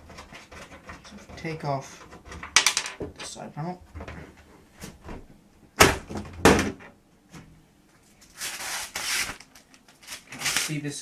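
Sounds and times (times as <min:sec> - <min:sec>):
sharp knocks on computer case: 0:05.8 - 0:06.9.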